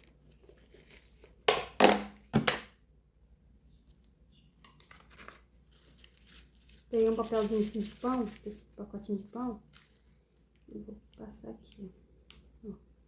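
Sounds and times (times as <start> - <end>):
bread bag crinkling: 5.0 - 10.2.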